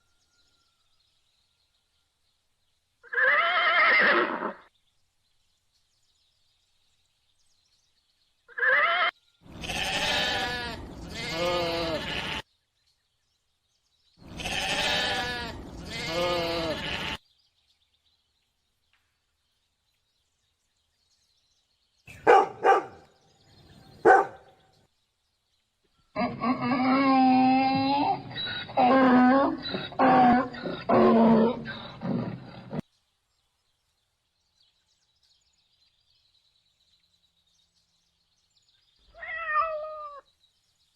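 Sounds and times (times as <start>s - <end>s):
goat or sheep bleating: 8.6s - 12.4s, 14.2s - 17.2s.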